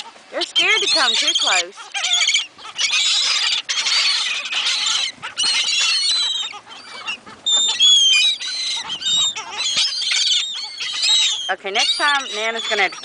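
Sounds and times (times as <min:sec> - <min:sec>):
seagulls calling: 0:00.0 - 0:13.0.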